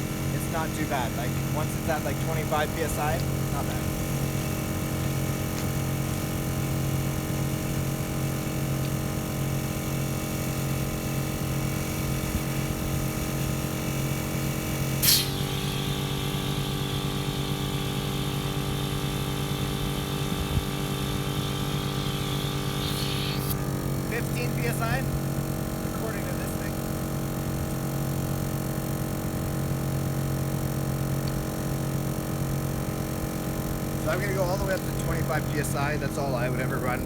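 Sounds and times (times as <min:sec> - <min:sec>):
air compressor running: 0:00.0 - 0:37.0
sharp click: 0:15.0 - 0:15.4
high hiss: 0:15.0 - 0:15.6, 0:21.1 - 0:24.7.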